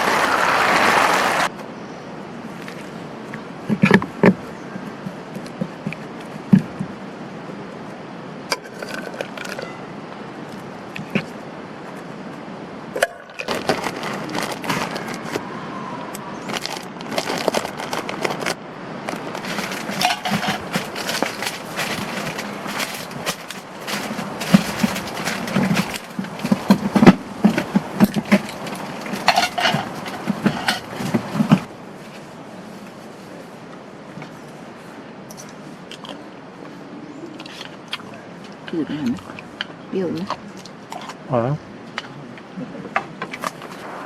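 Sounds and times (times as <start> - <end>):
objects clattering and scraping: 8.5 - 9.9, 13.0 - 15.4, 16.4 - 32.4.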